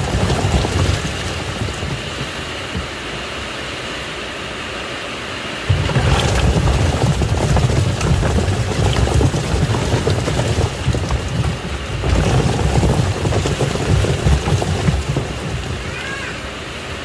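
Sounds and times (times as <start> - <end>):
plastic toys knocking in drum: 0.0 - 2.9, 5.7 - 16.2
water sloshing: 0.0 - 3.3, 5.7 - 16.2
washing machine motor rumble: 0.0 - 3.6, 5.6 - 17.0.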